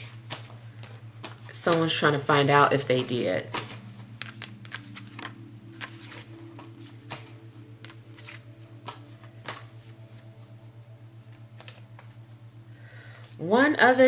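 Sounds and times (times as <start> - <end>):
low hum: 0.0 - 14.0
cards clicking and tapping on table: 3.5 - 9.7.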